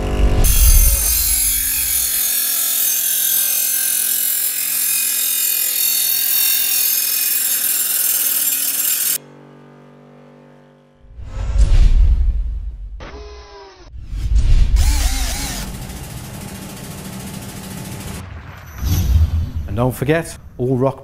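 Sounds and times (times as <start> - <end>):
grinding wheel on workpiece: 0.0 - 9.2, 14.8 - 18.2
bench grinder motor humming: 0.0 - 9.5, 14.8 - 18.2.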